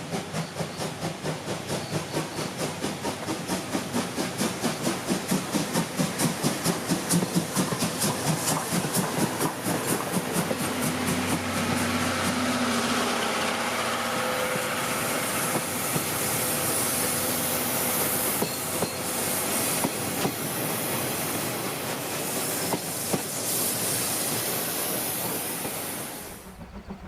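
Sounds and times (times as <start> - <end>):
steam train hissing: 0.0 - 27.0
wheels clicking over rail joints: 25.2 - 27.0.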